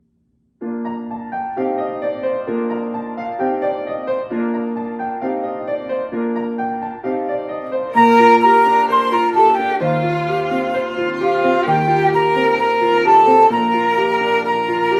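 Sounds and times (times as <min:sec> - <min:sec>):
piano playing: 0:00.6 - 0:14.9
violin melody: 0:07.8 - 0:14.9.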